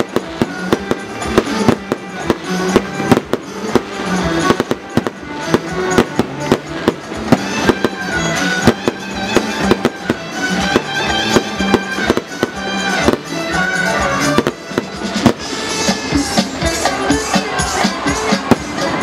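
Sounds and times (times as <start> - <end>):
fireworks bangs and cracks: 0.0 - 19.0
music: 0.0 - 19.0.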